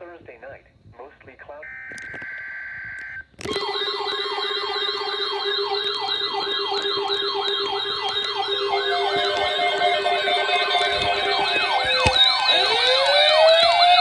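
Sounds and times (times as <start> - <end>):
electronic yelp siren: 1.6 - 14.0
steady lower tone: 3.5 - 14.0.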